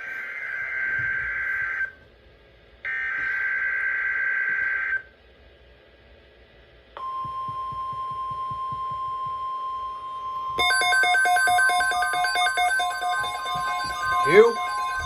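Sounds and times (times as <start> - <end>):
data header bursts: 10.6 - 15.0
steady alarm tone: 10.6 - 15.0
warbling electronic alarm: 10.6 - 15.0.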